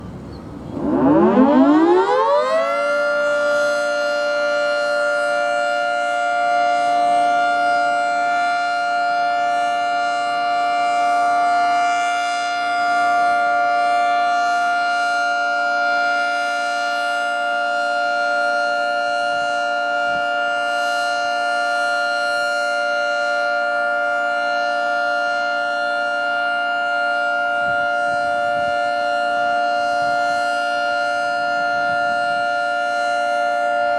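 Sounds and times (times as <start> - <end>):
warning siren winding up: 0.4 - 33.9.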